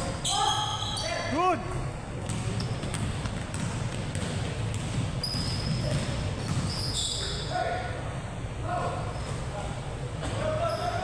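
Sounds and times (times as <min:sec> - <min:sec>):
sneakers squeaking: 0:00.0 - 0:07.8, 0:09.0 - 0:11.0
ball bouncing on court floor: 0:02.2 - 0:07.0.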